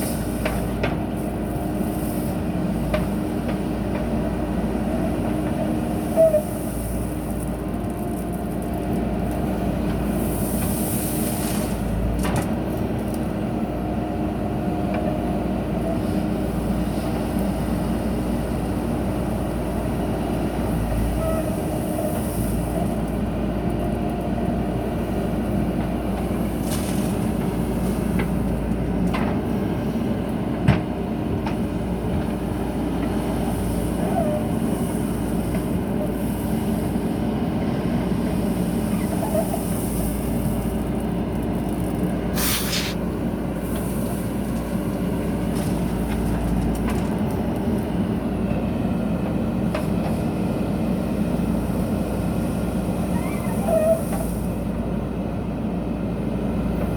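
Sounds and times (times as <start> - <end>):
diesel engine running: 0.0 - 56.9
brief hiss: 42.3 - 43.1.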